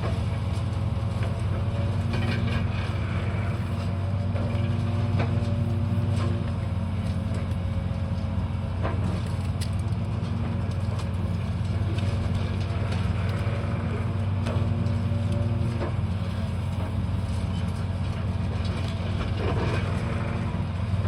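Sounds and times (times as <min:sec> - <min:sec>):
demolition machinery engine hum: 0:00.0 - 0:21.0
material cracking and breaking: 0:07.0 - 0:13.5.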